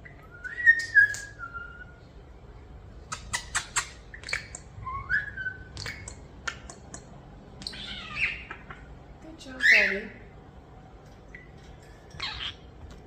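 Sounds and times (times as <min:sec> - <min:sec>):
starling clicks and chirps: 0:00.7 - 0:01.4, 0:03.1 - 0:04.8, 0:05.7 - 0:08.9.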